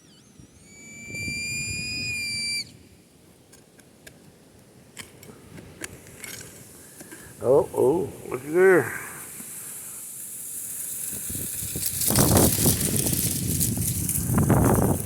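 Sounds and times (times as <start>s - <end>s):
metal detector tone: 0.0s - 2.6s.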